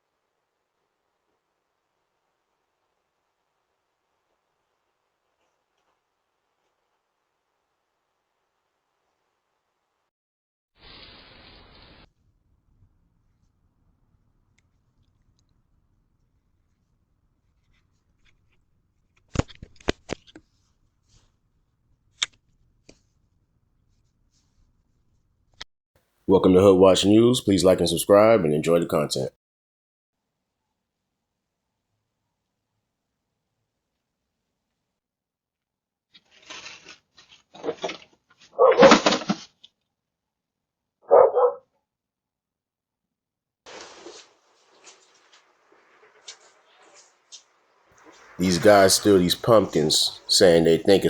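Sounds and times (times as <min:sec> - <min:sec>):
dog barking: 0:38.6 - 0:38.9, 0:41.0 - 0:41.6.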